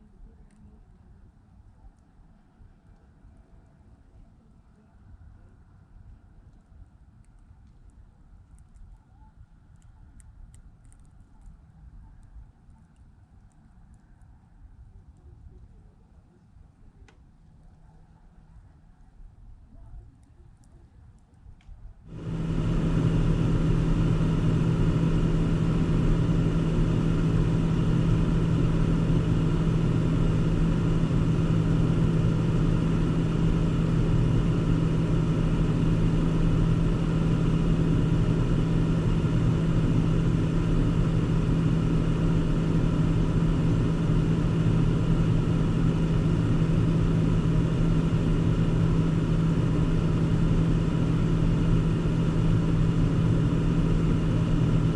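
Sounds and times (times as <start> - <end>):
car engine hum: 22.1 - 54.9
rumbling road noise: 22.1 - 54.9.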